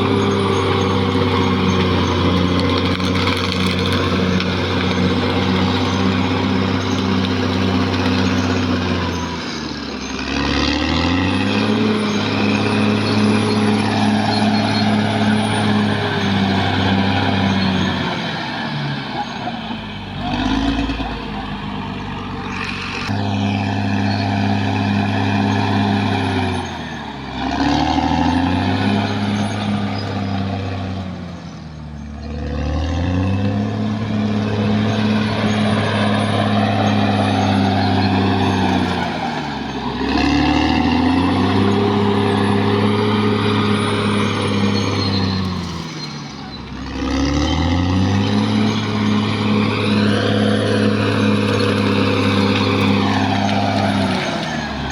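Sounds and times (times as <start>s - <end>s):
bulldozer diesel engine running: 0.0s - 54.9s.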